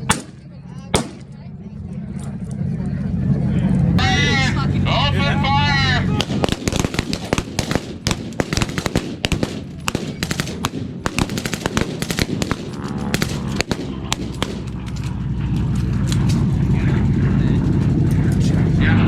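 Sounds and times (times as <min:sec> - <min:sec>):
aircraft engines droning: 0:00.0 - 0:19.0
rifle and machine gun fire: 0:06.2 - 0:14.9.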